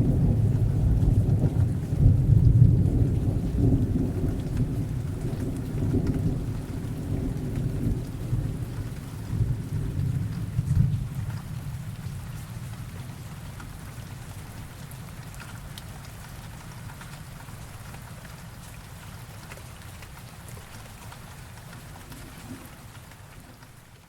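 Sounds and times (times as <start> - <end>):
low rumble of thunder: 0.0 - 15.2
steady rain falling: 0.0 - 24.0.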